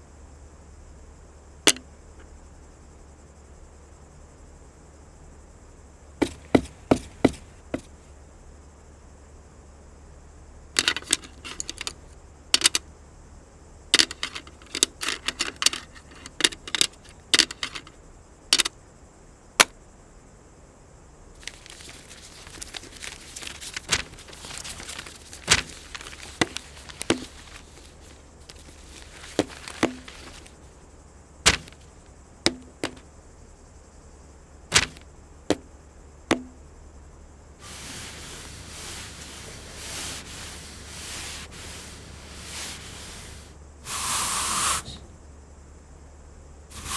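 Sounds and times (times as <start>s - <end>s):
soft rustling: 6.2s - 8.1s, 10.8s - 12.8s, 14.0s - 17.9s, 21.4s - 30.8s, 31.5s - 33.0s, 34.7s - 35.6s, 37.6s - 45.2s.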